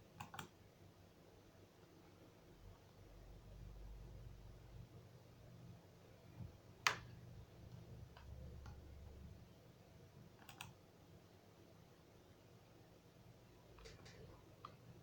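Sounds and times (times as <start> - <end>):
computer mouse clicks: 0.2 - 0.6, 6.8 - 8.8, 10.3 - 10.8, 13.8 - 14.8.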